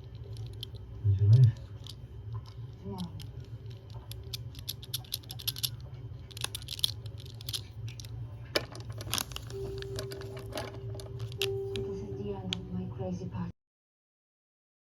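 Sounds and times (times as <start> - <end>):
steady low hum: 0.0 - 13.5.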